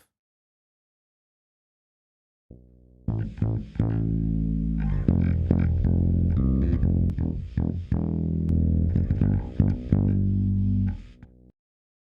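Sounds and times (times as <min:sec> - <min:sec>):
electric bass guitar plucked notes: 0:02.5 - 0:11.5.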